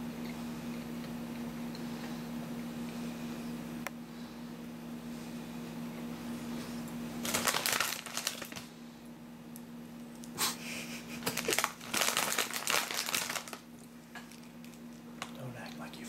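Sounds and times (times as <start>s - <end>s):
steady low hum: 0.0s - 16.0s
chips crunching while snacking: 7.2s - 8.7s, 11.2s - 15.4s.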